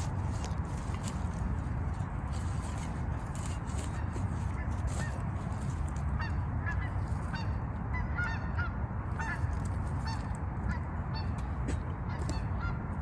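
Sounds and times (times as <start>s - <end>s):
steady low rumble: 0.0s - 13.0s
geese honking: 3.8s - 12.8s.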